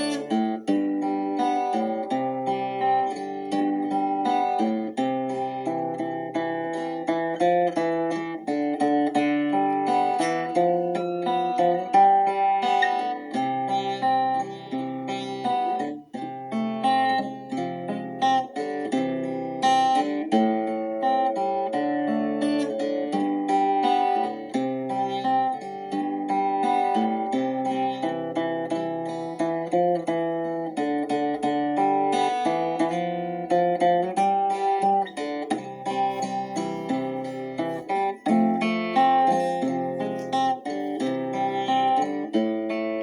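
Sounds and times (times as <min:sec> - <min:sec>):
acoustic guitar music: 0:00.0 - 0:43.0.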